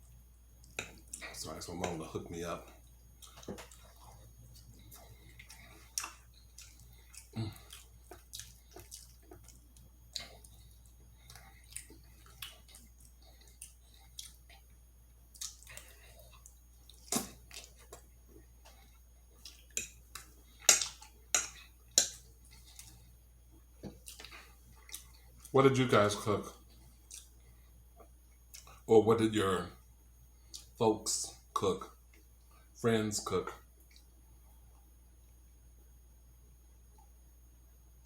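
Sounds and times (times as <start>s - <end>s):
chewing mouth sounds: 2.7s - 23.1s, 23.8s - 25.5s, 26.7s - 28.9s
lip smacks: 15.3s - 23.0s.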